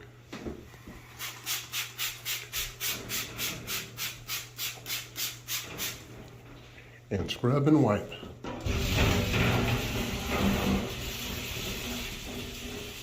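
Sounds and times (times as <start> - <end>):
spray bottle squirts: 1.1 - 6.1.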